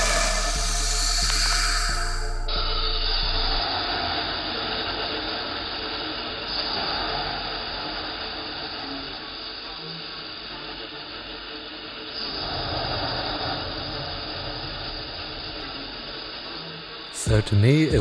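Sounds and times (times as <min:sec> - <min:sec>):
gas hissing from nozzles: 0:00.0 - 0:02.5.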